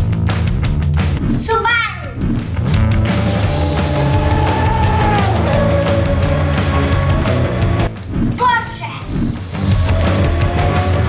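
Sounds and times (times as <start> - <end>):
distorted rock music: 0.0 - 1.4, 2.1 - 11.0
bass: 0.0 - 11.0
steady drum beat: 0.0 - 11.0.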